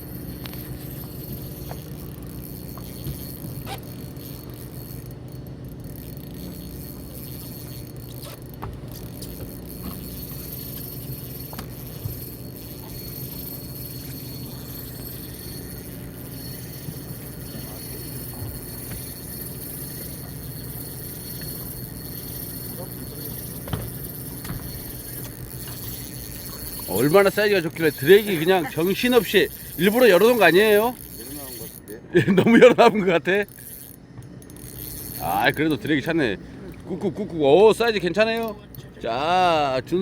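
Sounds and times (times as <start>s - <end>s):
boat engine humming: 0.0s - 40.0s
faint tackle clicks and taps: 0.3s - 1.9s, 8.0s - 15.2s, 15.9s - 26.9s.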